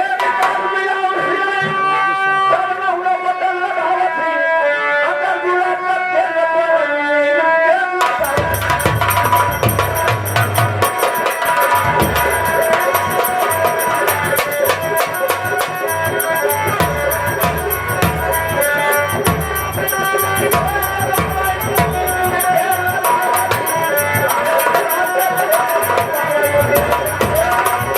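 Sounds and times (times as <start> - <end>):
fast drumming: 8.0 - 27.9
held melody line: 8.0 - 27.9.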